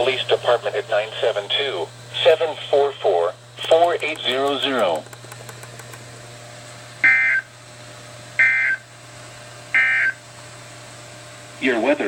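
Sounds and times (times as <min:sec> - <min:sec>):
low radio hum and hiss: 0:00.0 - 0:12.0
digital data tone bursts: 0:07.0 - 0:07.5, 0:09.8 - 0:10.2.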